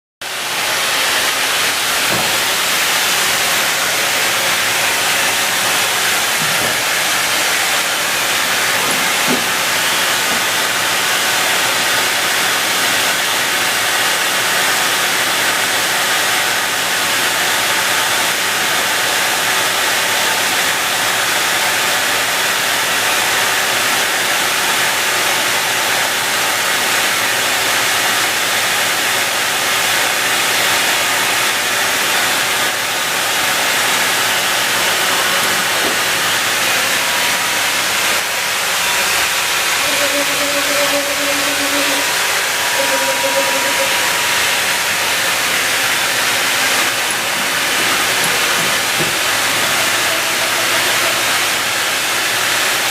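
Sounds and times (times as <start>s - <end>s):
industrial machinery hissing: 0.2s - 52.9s
faint hum tones: 38.9s - 51.2s.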